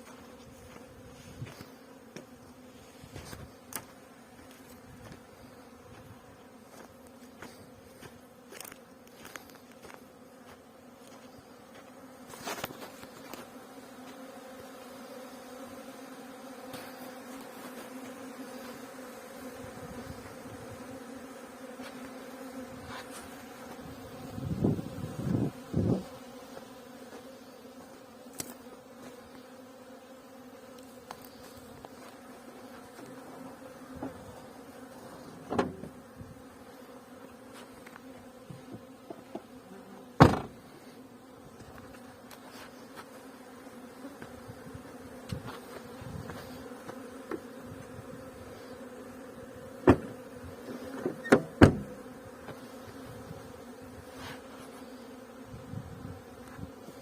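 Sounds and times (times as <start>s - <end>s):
bees buzzing: 0.0s - 57.0s
sharp knocks: 40.2s - 40.5s.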